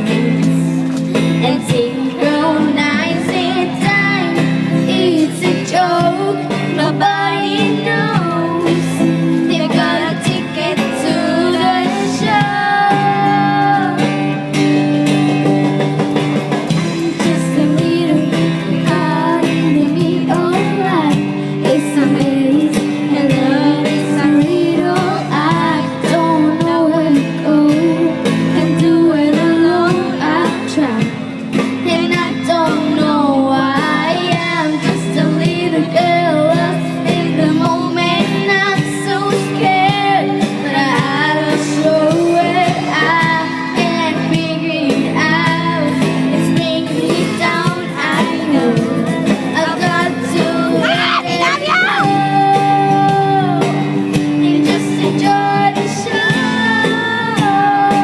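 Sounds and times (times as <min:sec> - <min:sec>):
girl singing: 0:00.0 - 0:14.3, 0:16.7 - 0:31.2, 0:31.8 - 0:58.0
pop-rock band with guitar: 0:00.0 - 0:58.0.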